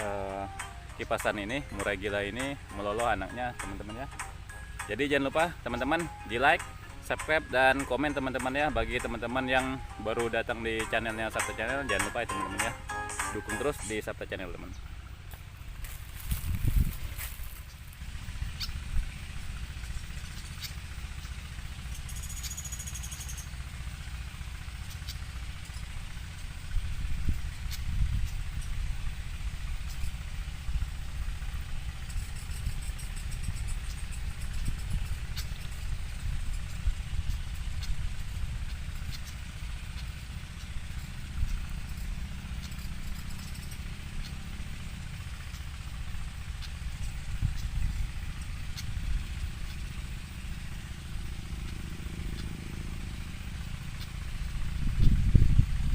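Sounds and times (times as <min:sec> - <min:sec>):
high-pitched chittering: 0:00.0 - 0:14.1
small engine idling: 0:00.0 - 0:55.9
steady low rumble: 0:13.9 - 0:22.2, 0:23.6 - 0:55.9
high bird chips: 0:15.2 - 0:19.2.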